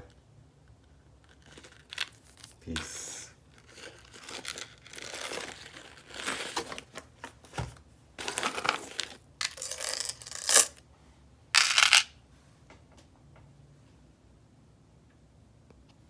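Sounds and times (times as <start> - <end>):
packaging crinkling: 1.3 - 2.7, 3.5 - 10.8
chain jewelry clinking: 8.6 - 10.8, 11.6 - 12.1.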